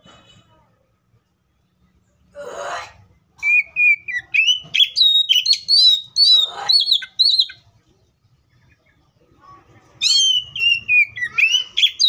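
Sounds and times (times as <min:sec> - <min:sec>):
bird singing whistled notes: 0:03.4 - 0:07.6, 0:10.0 - 0:12.0.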